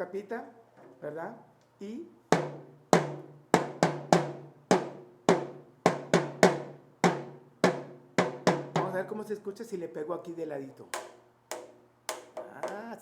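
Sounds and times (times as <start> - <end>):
small drum hits: 2.3 - 9.1, 10.9 - 13.0.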